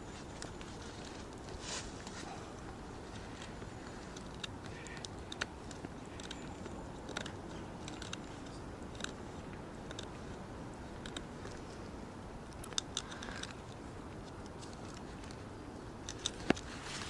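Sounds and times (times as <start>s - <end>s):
knife carving wood: 3.2s - 10.2s.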